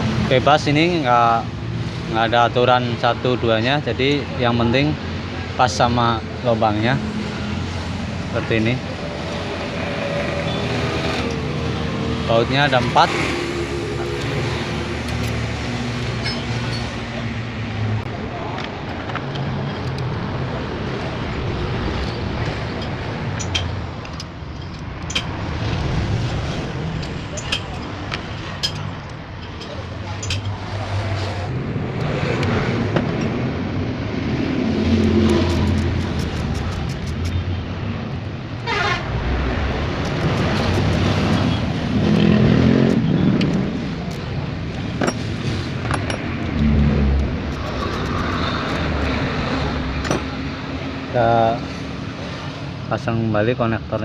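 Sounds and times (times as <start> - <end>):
road traffic rumble: 0.0 - 54.0
hand tool metallic clicks: 28.5 - 30.6, 35.2 - 37.4
high-pitched falling tone: 46.5 - 48.0.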